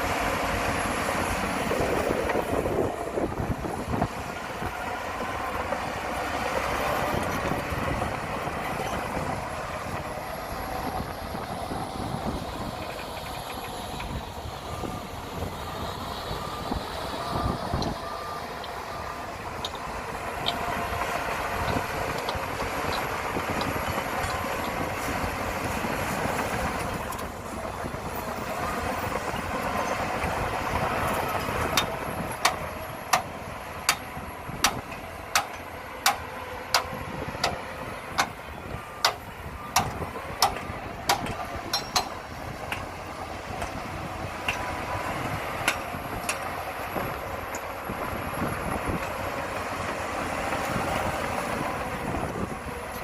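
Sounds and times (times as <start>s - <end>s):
diesel earthmoving machinery running: 0.0s - 53.0s
reversing alarm beeping: 13.8s - 24.5s, 38.2s - 45.1s.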